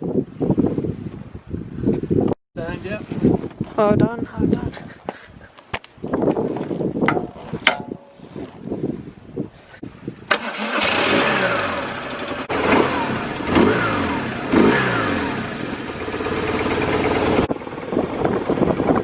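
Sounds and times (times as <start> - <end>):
motorcycle engine revving: 10.4 - 19.0.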